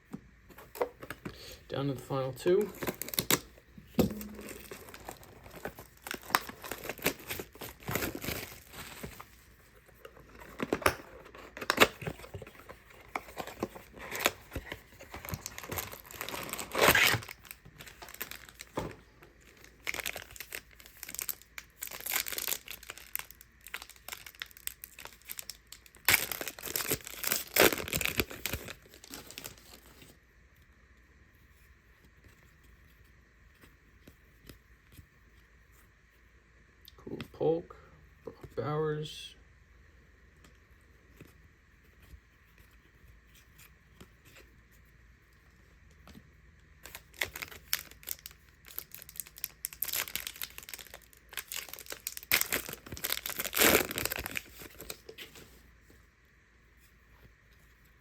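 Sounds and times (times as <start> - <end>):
wrappers tearing and crinkling: 2.7 - 3.5, 4.1 - 9.2, 10.4 - 18.8, 19.6 - 29.9, 46.8 - 55.2.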